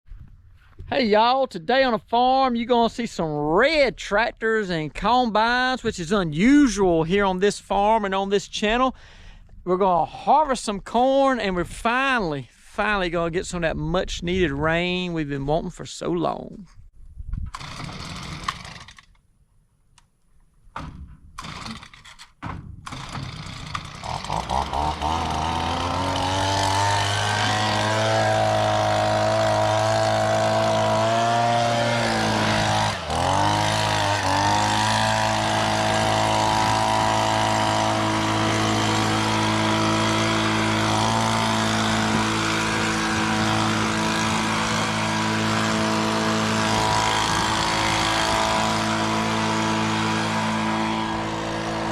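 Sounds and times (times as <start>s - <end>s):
starter clicks: 17.5s - 19.3s
diesel engine revving: 22.9s - 51.9s.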